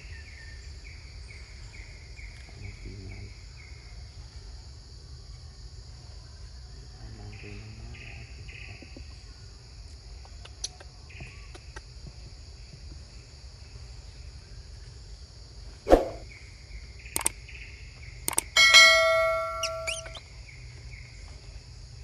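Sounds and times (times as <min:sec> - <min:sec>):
high insect drone: 0:00.0 - 0:10.2, 0:12.0 - 0:22.0
metal clang ringing: 0:18.4 - 0:20.2.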